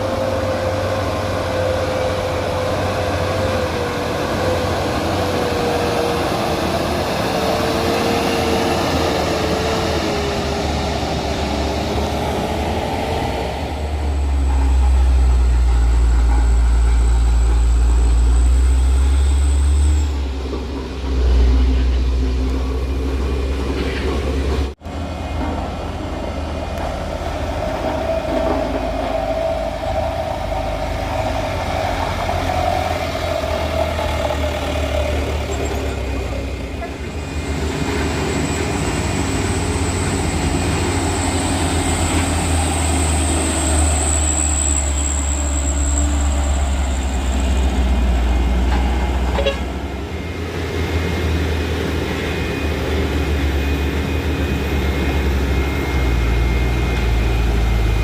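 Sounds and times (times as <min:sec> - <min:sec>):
diesel trucks climbing hill: 0:00.0 - 0:58.0.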